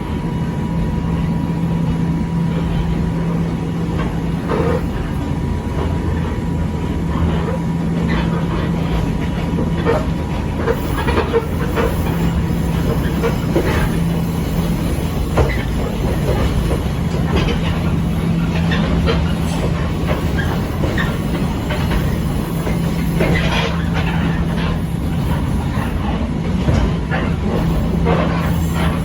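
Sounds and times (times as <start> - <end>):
constant low hum: 0.0 - 29.0
train wheels rumbling on rail: 0.0 - 29.0
clicks and knocks from track: 7.1 - 29.0.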